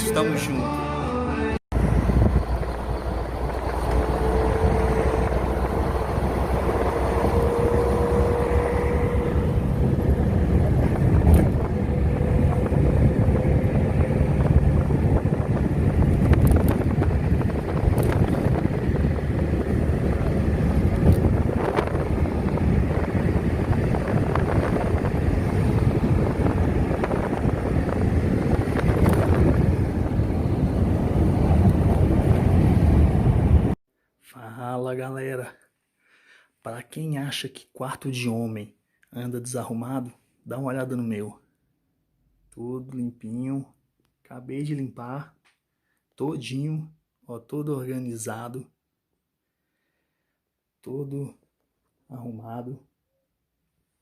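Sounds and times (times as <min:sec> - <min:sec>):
low rumble: 0:01.7 - 0:33.8
wind on microphone: 0:01.7 - 0:33.8
faint rising tone: 0:01.8 - 0:15.0.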